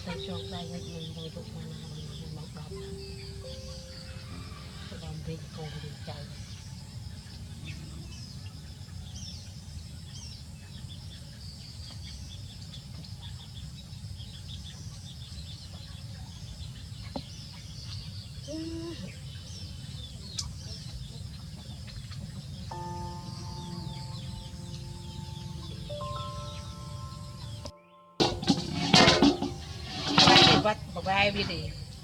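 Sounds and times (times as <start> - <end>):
birds chirping: 0.0 - 32.0.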